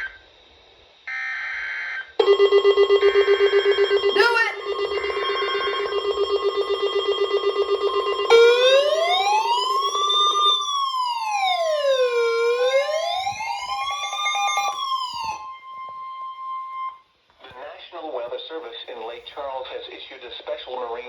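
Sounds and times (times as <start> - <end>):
steady single beep tone: 2.2 - 10.6
electronic siren wailing: 2.2 - 17.0
pulsing buzz alarm: 2.2 - 17.0.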